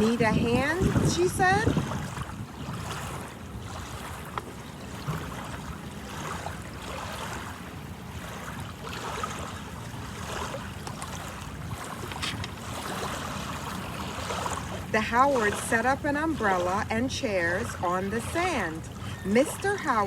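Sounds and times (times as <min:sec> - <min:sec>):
wind on microphone: 0:00.0 - 0:04.4
ocean surf washing: 0:00.0 - 0:20.0.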